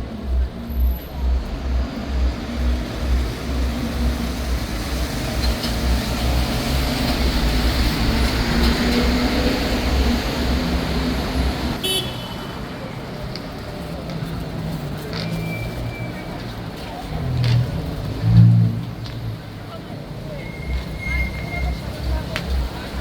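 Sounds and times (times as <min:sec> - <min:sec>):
low traffic rumble: 0:00.0 - 0:23.0
vehicle passing close by: 0:01.2 - 0:11.8.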